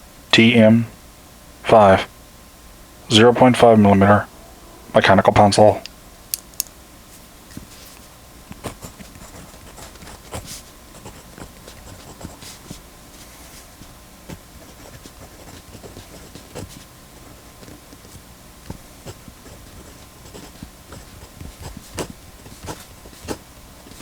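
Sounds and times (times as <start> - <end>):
pencil scratching on paper: 8.6 - 24.0.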